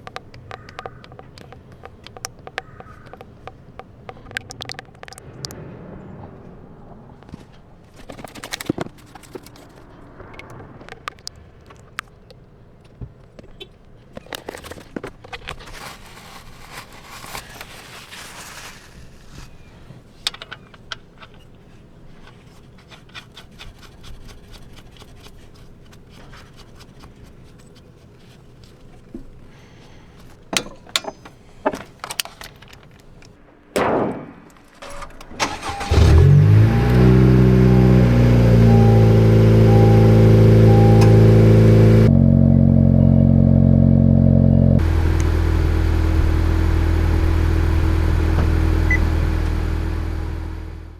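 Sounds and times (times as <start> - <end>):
handling clicks: 0.0 - 5.6
car engine starting and idling: 34.8 - 50.9.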